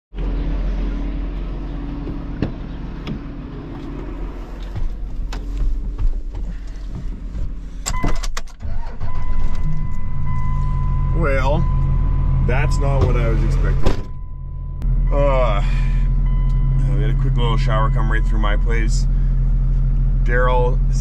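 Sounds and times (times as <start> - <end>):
vehicle engine idling: 0.1 - 8.0, 8.6 - 21.0
steady high beep tone: 9.2 - 18.7.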